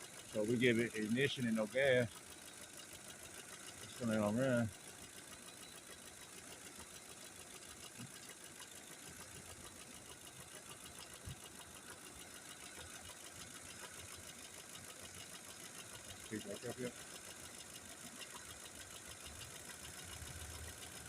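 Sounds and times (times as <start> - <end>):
car engine idling: 10.2 - 21.0.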